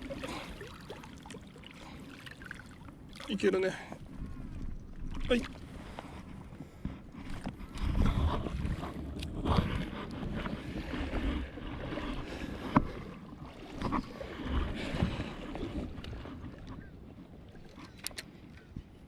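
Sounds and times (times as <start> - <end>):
water sloshing and splashing: 0.0 - 19.0
wind on microphone: 4.0 - 19.0.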